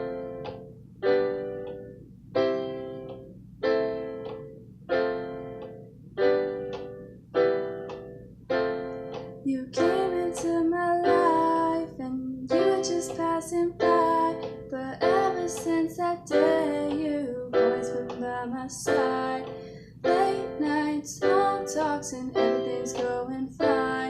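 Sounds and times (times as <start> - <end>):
acoustic chords ringing: 0.0 - 24.0
woman singing: 9.4 - 24.0.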